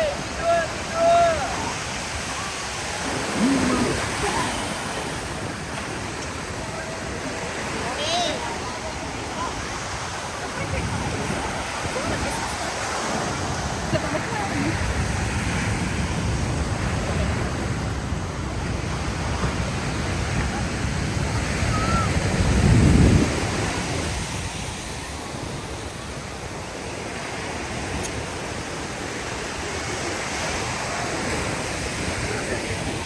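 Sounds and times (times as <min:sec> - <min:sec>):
ocean surf washing on beach: 0:00.0 - 0:33.0
wind buffeting microphone: 0:08.5 - 0:26.4.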